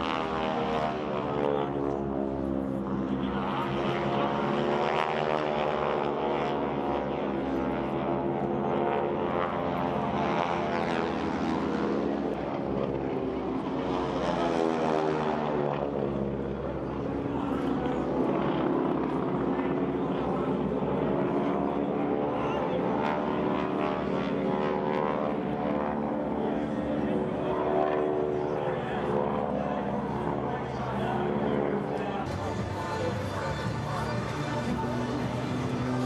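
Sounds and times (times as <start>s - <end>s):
propeller airplane engine droning: 0.0s - 36.0s.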